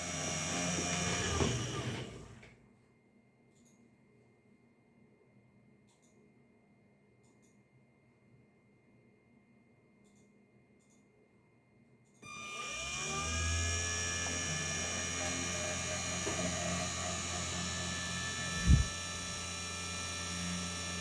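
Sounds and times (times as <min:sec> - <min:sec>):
spindle motor whining: 0:00.0 - 0:02.5, 0:12.2 - 0:21.0.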